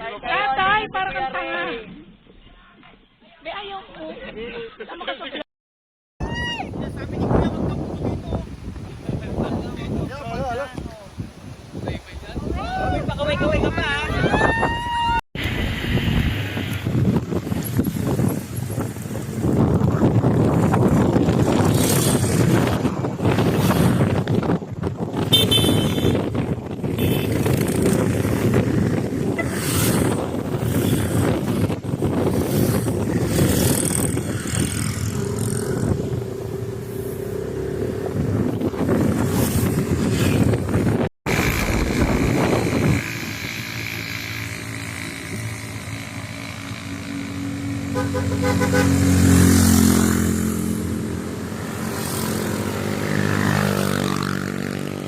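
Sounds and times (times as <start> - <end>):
motorcycle engine humming: 6.2 - 14.2, 25.2 - 55.0
wind noise on microphone: 6.2 - 55.0.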